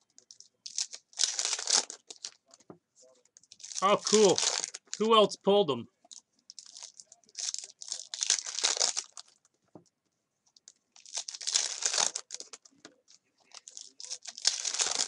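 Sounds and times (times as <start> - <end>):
plastic wrappers crinkling and tearing: 0.2 - 2.6, 3.4 - 5.0, 6.1 - 9.5, 10.5 - 15.0.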